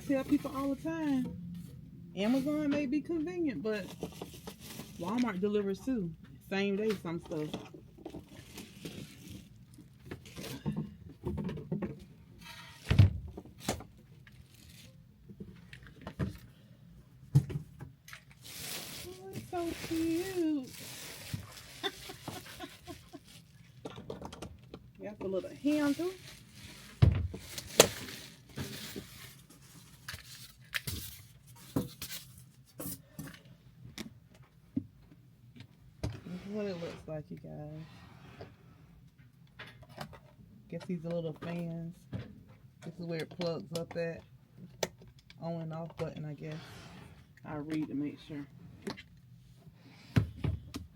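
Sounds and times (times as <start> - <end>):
mini fridge clicks and knocks: 17.3 - 18.0, 50.2 - 50.9
packaging rustling: 18.1 - 23.8, 25.3 - 32.8.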